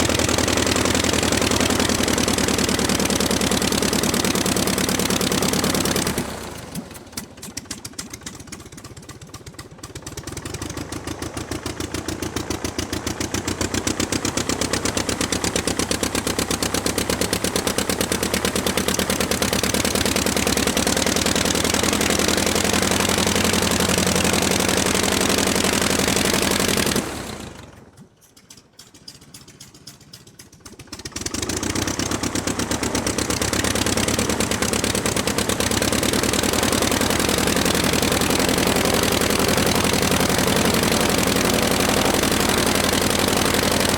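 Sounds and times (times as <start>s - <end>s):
piston aircraft engine running: 0.0s - 43.9s.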